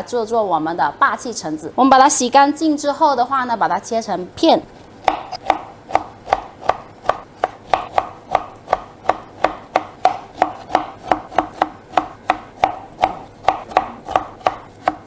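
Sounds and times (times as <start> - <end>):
knife slicing on cutting board: 4.8 - 15.0.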